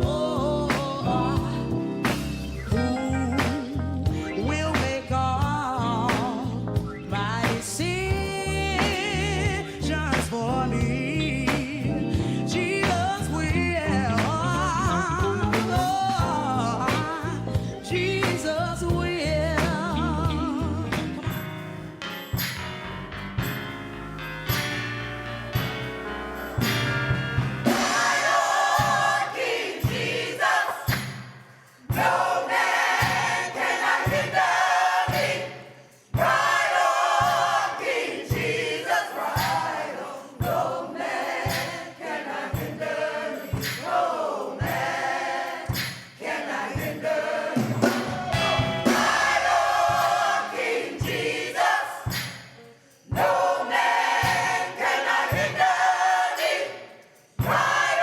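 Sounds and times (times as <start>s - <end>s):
gospel choir with band: 0.0s - 58.0s.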